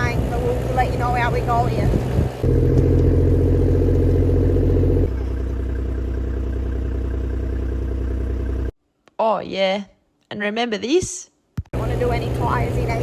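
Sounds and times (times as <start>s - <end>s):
car engine running while driving: 0.0s - 8.7s, 11.8s - 13.0s.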